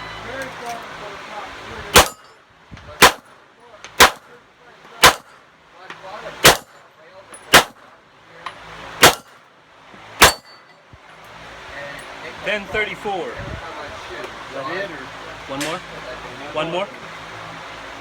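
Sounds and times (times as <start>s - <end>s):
pistol shots: 2.0s - 2.3s, 3.0s - 3.3s, 4.0s - 4.3s, 5.0s - 5.4s, 6.4s - 6.8s, 7.5s - 7.8s, 9.0s - 9.4s, 10.2s - 10.5s.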